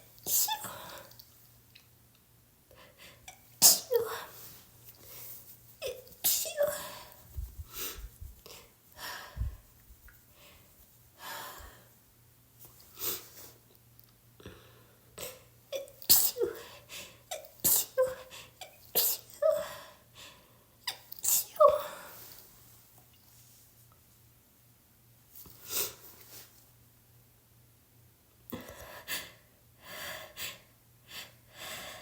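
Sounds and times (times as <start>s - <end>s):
person sneezing: 0.2s - 1.1s, 3.3s - 4.5s, 5.8s - 7.1s, 15.2s - 16.7s, 17.3s - 19.6s, 20.9s - 22.2s
person breathing: 7.0s - 9.7s.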